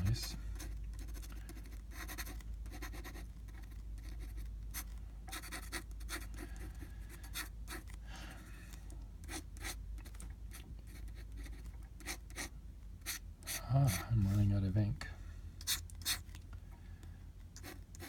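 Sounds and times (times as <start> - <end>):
pen nib scratching paper: 0.0 - 8.0, 9.3 - 14.1, 15.6 - 16.2, 17.6 - 18.0
steady low hum: 0.0 - 18.0.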